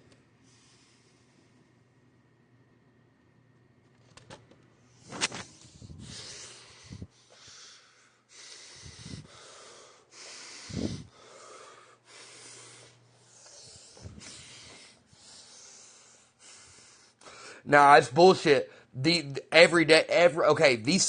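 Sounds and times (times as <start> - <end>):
man breathing heavily: 4.9 - 17.7.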